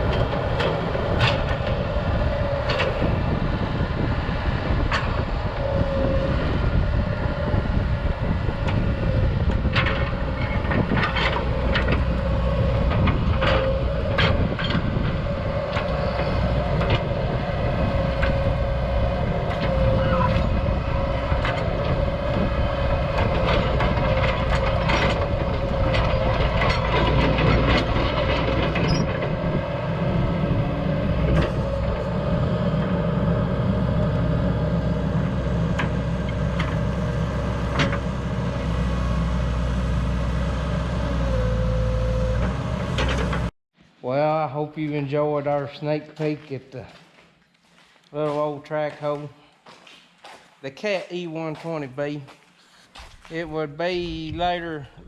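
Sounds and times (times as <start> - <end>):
excavator engine rumble and whine: 0.0 - 43.6.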